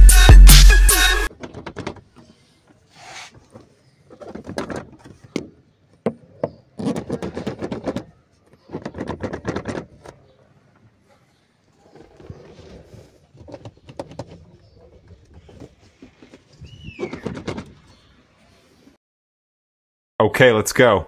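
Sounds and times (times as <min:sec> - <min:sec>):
dashboard rattling: 0:03.5 - 0:10.3, 0:13.4 - 0:18.0.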